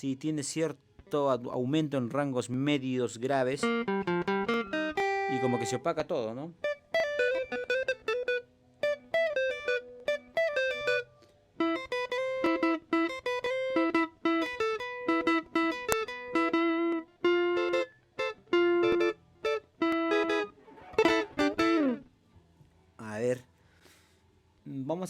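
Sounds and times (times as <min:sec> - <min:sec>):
clean electric guitar notes: 0:03.6 - 0:05.9, 0:06.6 - 0:22.1.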